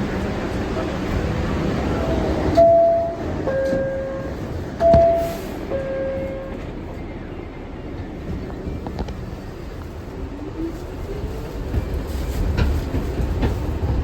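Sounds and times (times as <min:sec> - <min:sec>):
train rumbling: 0:00.0 - 0:14.0
subway door two-tone chime: 0:02.4 - 0:09.7.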